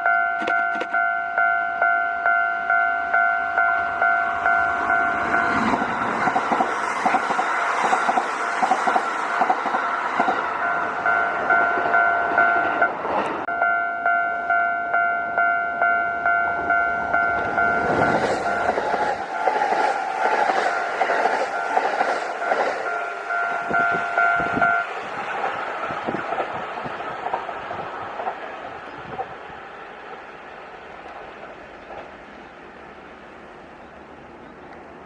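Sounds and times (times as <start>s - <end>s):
level-crossing warning bell: 0.0s - 6.7s, 8.4s - 26.2s
train rumbling with wheels clacking: 3.0s - 13.5s, 16.2s - 35.0s.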